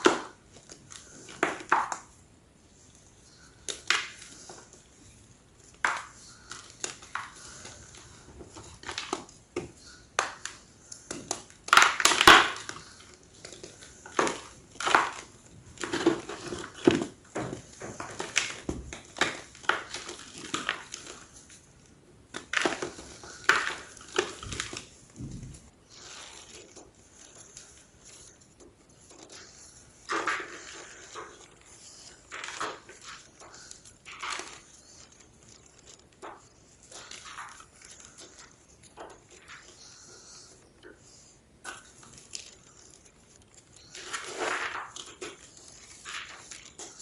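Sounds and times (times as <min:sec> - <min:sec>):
chalk crunching and crumbling: 0:22.3 - 0:47.0.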